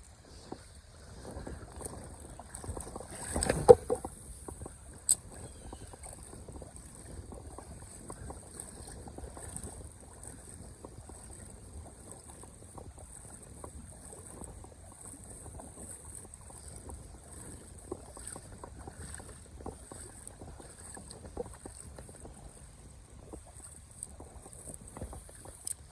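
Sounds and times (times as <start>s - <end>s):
small splashes and ticks: 0.0s - 25.9s.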